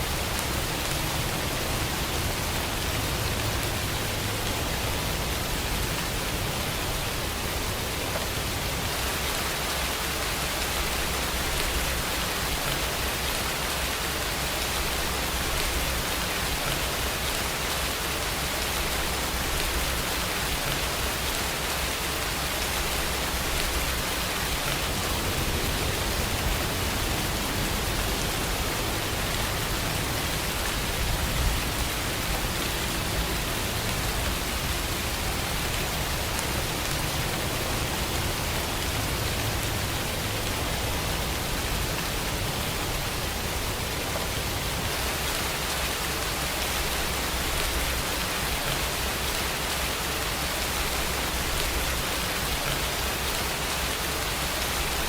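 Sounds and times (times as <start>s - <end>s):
rain falling: 0.0s - 55.0s
low rumble: 23.6s - 30.2s.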